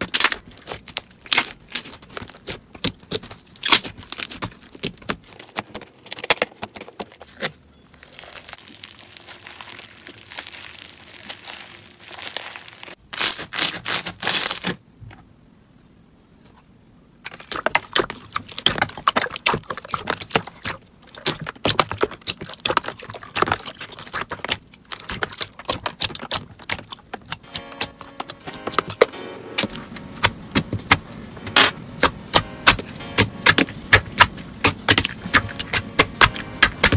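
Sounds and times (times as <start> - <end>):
slime crackling and popping: 0.0 - 14.7, 17.3 - 36.9.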